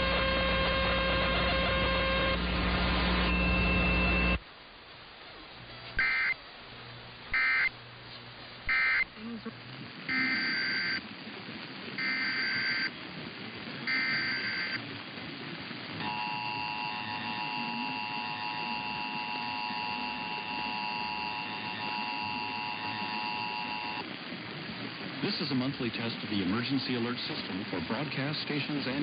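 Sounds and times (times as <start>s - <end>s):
screechy digital data bursts: 6.0s - 6.4s, 7.3s - 7.7s, 8.7s - 9.1s, 10.1s - 11.0s, 12.0s - 12.9s, 13.9s - 14.8s, 16.0s - 24.0s
two-tone alert signal: 6.0s - 6.4s, 10.1s - 11.0s, 13.9s - 14.8s.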